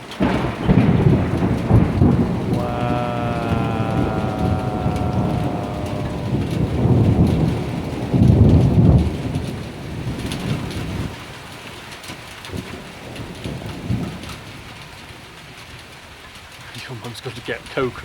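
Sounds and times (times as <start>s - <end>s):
steady rain: 0.0s - 18.0s
thunder rumbling: 0.2s - 11.1s.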